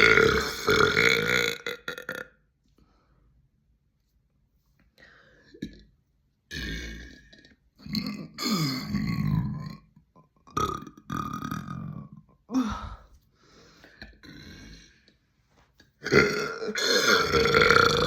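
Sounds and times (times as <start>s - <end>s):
person burping: 0.0s - 2.4s, 6.5s - 13.0s, 14.0s - 14.9s, 16.0s - 18.0s.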